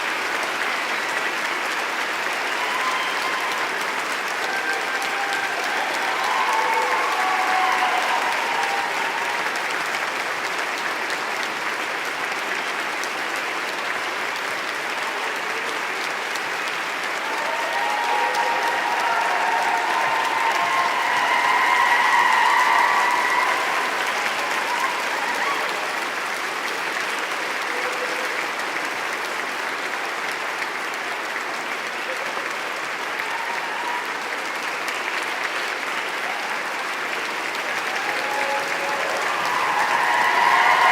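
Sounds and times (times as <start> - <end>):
crowd applauding: 0.0 - 40.9
voices cheering: 2.0 - 10.4, 17.1 - 26.7, 33.0 - 40.9.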